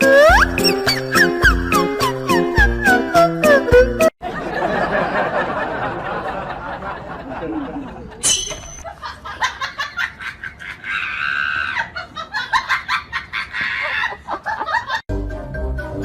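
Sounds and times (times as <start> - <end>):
children's music: 0.0 - 4.1
people laughing: 4.2 - 8.2, 8.8 - 15.0.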